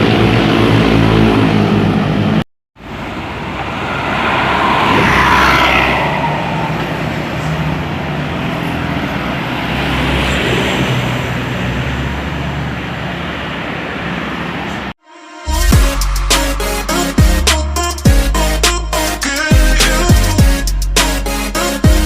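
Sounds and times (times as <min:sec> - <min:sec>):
steady engine rumble: 0:00.0 - 0:09.8
vehicle passing: 0:00.0 - 0:14.9.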